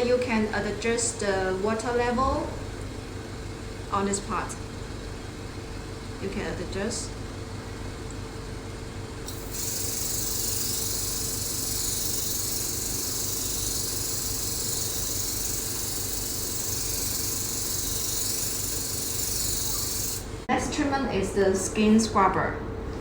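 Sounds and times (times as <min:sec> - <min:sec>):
low machine hum: 0:00.0 - 0:23.0
spray gun hissing water mist: 0:09.3 - 0:20.4.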